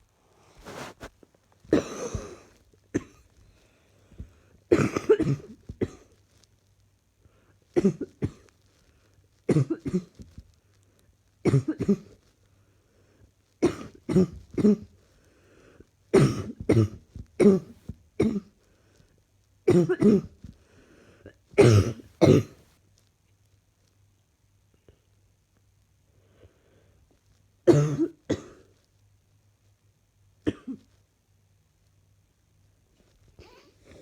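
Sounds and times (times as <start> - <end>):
person coughing: 1.7 - 3.2, 4.7 - 6.0, 16.2 - 18.5, 19.7 - 20.3, 21.6 - 22.6, 27.7 - 28.6, 30.5 - 30.8, 33.4 - 34.0.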